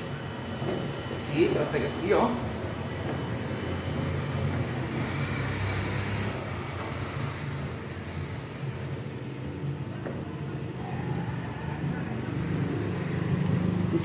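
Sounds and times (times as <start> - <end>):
hiss: 3.6 - 9.0.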